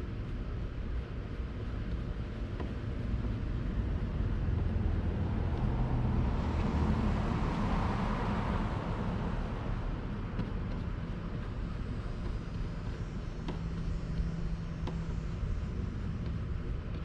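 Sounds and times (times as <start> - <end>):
vehicle passing: 4.4 - 10.1.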